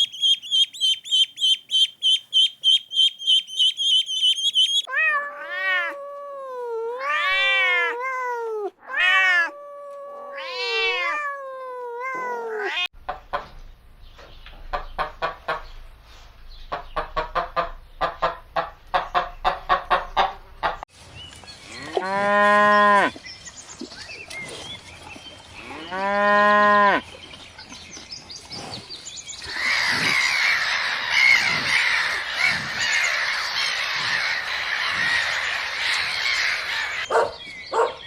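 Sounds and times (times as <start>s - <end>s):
short evenly spaced pulses: 0.0s - 4.9s
cat meowing: 4.9s - 12.9s.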